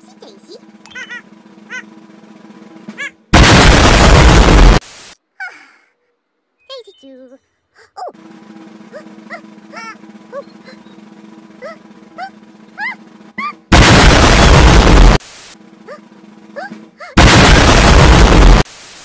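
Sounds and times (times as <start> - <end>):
steady low hum: 0.0 - 5.1, 7.6 - 18.7
short rising chirps: 0.6 - 4.1, 8.2 - 14.5
distorted clipped noise blasts: 0.7 - 5.2, 11.2 - 15.6, 17.2 - 19.0.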